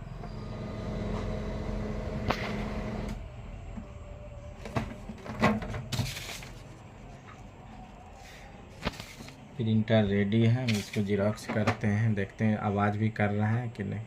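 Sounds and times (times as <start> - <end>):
printer motor humming: 0.0 - 5.3.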